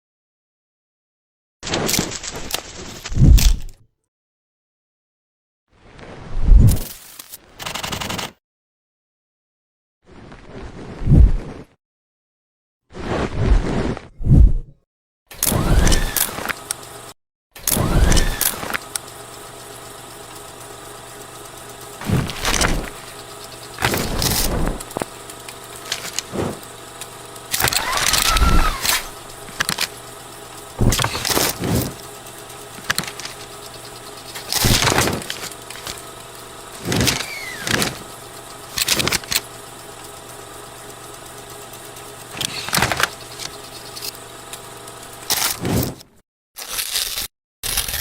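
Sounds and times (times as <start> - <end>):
steady mechanical hum: 15.3 - 46.1.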